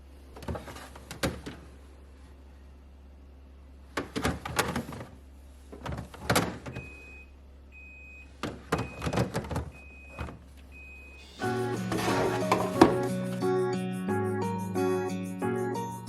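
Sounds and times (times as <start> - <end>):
plastic drawers clattering: 0.4 - 1.8, 3.9 - 6.9, 8.4 - 10.4, 11.6 - 13.2.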